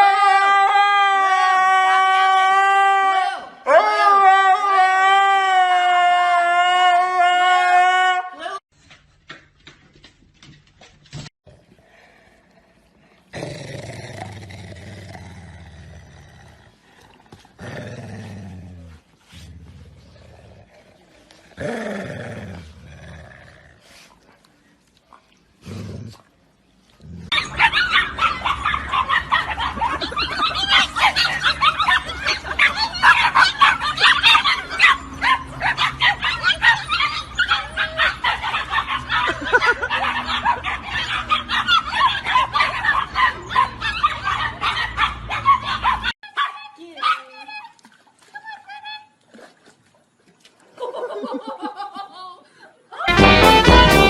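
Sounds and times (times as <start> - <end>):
rapid dog barking: 27.3 - 47.3.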